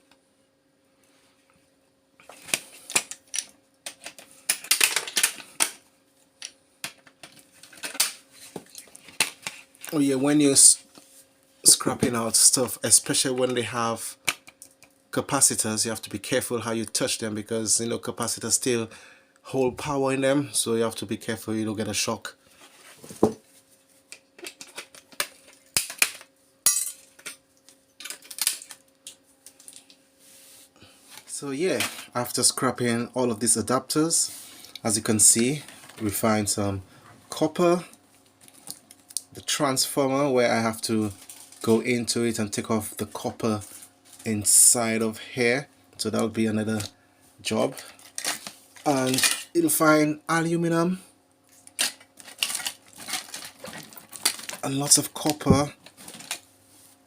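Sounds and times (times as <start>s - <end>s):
faint steady hum: 0.0s - 57.0s
clatter of small hard parts: 2.3s - 5.8s, 6.4s - 10.0s, 24.1s - 30.0s, 47.8s - 49.5s, 51.7s - 54.6s.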